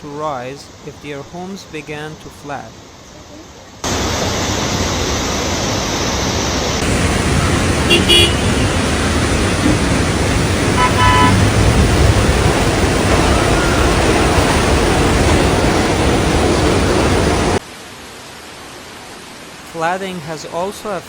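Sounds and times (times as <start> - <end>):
heavy rain and rushing floodwater: 3.8 - 21.0
car horn tooting: 7.8 - 8.9, 10.7 - 11.6.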